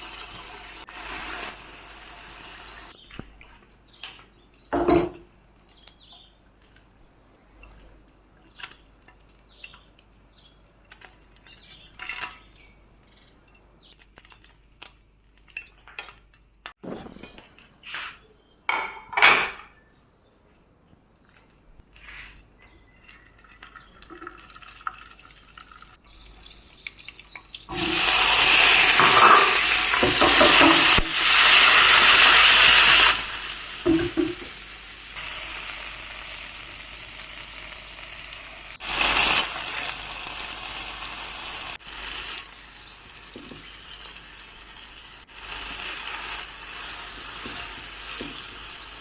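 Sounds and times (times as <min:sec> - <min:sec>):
food sizzling in frying pan: 0:00.0 - 0:03.0, 0:27.7 - 0:49.0.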